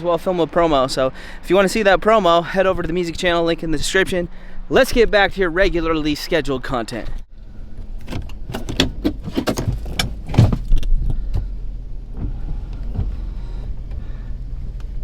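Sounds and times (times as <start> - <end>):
sharp clicks and knocks: 7.8 - 11.5.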